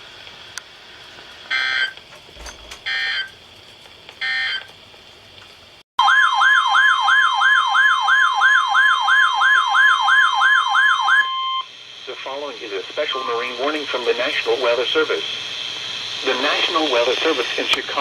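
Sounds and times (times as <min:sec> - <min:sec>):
warbling alarm tone: 0:06.0 - 0:11.7
digital data tones: 0:13.0 - 0:13.6.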